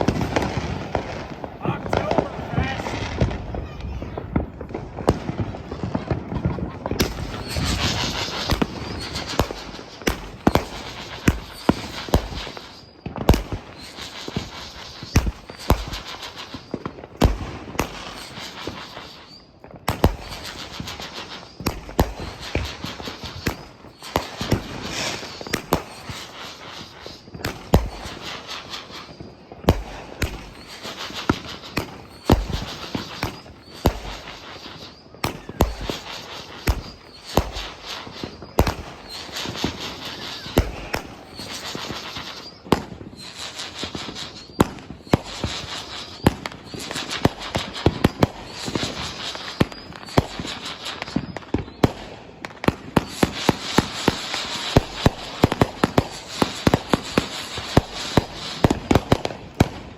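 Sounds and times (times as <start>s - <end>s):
fireworks bangs: 0.0s - 59.9s
fireworks crackling and hissing: 0.0s - 59.9s.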